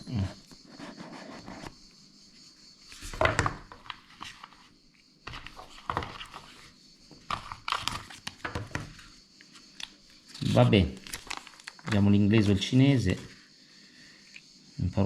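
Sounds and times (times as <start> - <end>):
packaging rustling: 7.2 - 8.9, 9.8 - 12.0.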